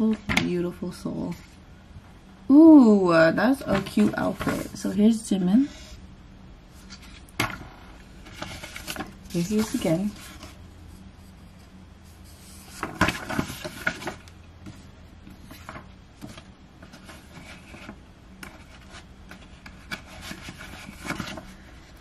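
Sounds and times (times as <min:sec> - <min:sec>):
paper pages rustling: 0:03.6 - 0:05.0, 0:06.8 - 0:11.0, 0:12.1 - 0:22.0.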